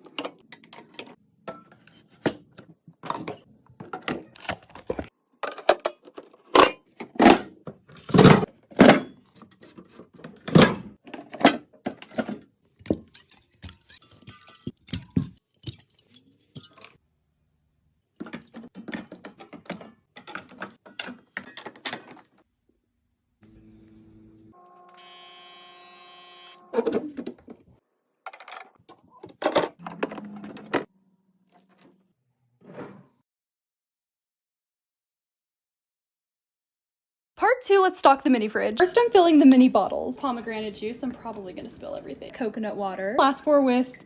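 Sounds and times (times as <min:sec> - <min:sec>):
packages and bottles clattering: 0:00.0 - 0:17.0, 0:18.2 - 0:22.4.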